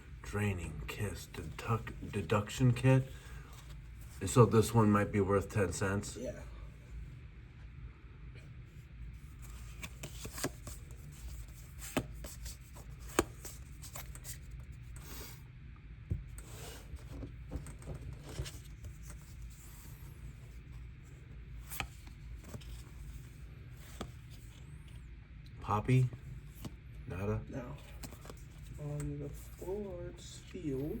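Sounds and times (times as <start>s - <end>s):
low steady hum: 0.0s - 31.0s
cards sliding against each other: 9.2s - 15.4s, 16.4s - 25.1s, 27.8s - 29.7s.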